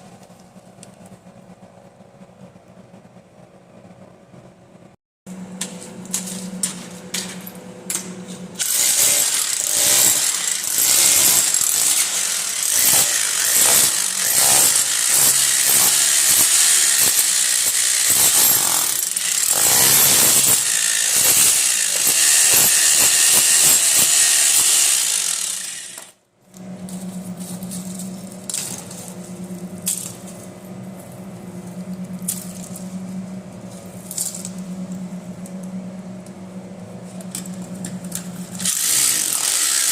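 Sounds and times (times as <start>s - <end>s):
hammer drill boring: 8.6s - 26.2s, 38.6s - 39.9s.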